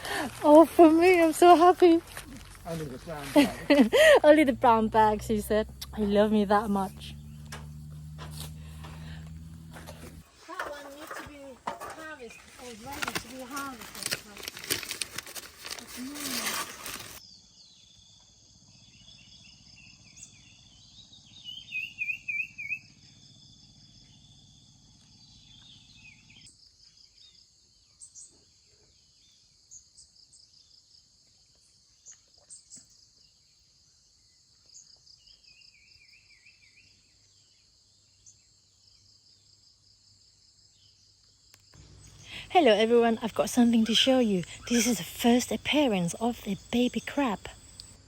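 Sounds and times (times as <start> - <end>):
insects chirring: 0.0 - 27.7, 30.2 - 48.0.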